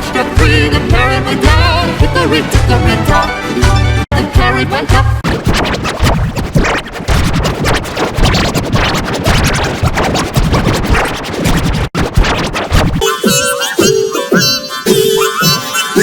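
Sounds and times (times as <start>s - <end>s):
distorted stuttering music: 5.2s - 16.0s.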